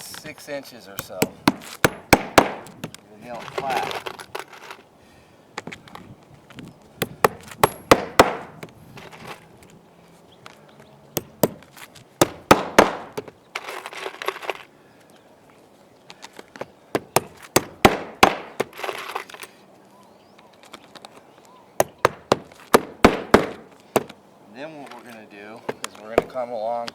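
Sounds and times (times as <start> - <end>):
hammer striking nails: 1.0 - 2.9, 7.0 - 8.6, 11.2 - 13.3, 17.0 - 18.8, 21.8 - 24.2.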